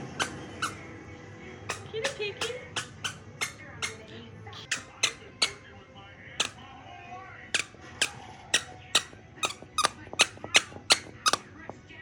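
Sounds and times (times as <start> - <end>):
squeaky dog toy squeaking: 0.0 - 0.9, 1.7 - 5.7, 6.4 - 6.6, 7.5 - 11.6.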